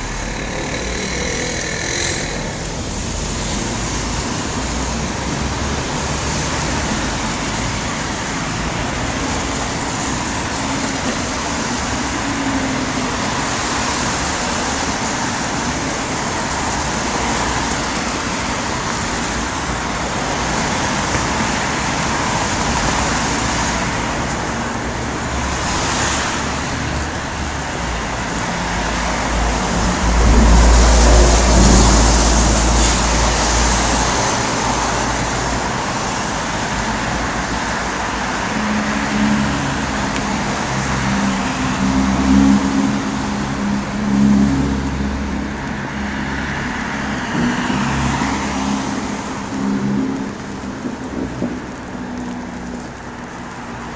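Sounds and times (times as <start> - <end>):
vehicle passing with low rumble: 0.0 - 10.6
road traffic: 0.0 - 53.9.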